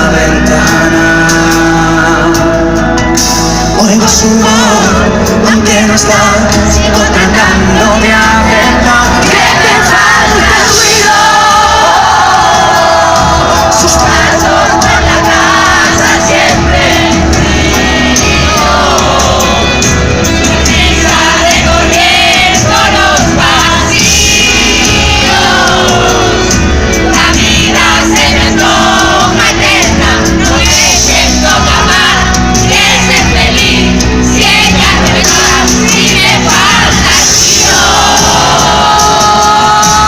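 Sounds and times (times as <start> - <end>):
band playing: 0.0 - 40.0
crowd noise: 0.0 - 40.0
person singing: 0.0 - 40.0.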